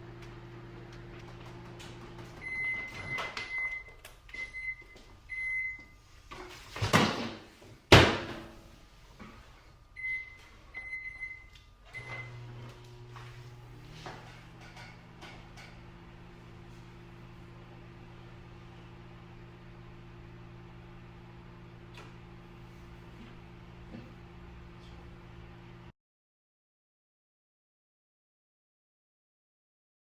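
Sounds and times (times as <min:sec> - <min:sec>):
microwave oven humming: 0:00.0 - 0:06.6, 0:07.9 - 0:25.9
keypad beeps: 0:02.4 - 0:05.8, 0:10.0 - 0:11.4
microwave door banging shut: 0:06.8 - 0:08.6.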